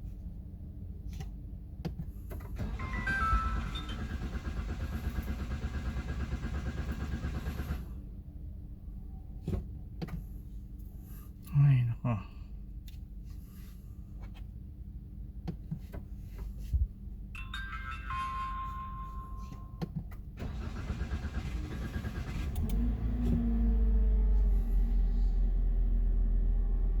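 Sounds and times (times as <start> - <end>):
car engine running: 2.0 - 8.0, 20.3 - 27.0
starter cranking engine: 2.6 - 7.9, 20.4 - 23.0.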